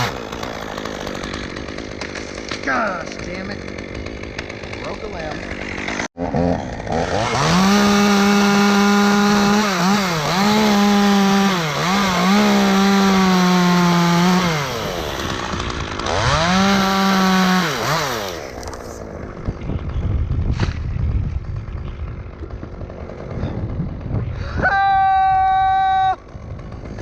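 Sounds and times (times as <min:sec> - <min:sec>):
chainsaw cutting wood: 0:00.0 - 0:24.4, 0:26.1 - 0:27.0.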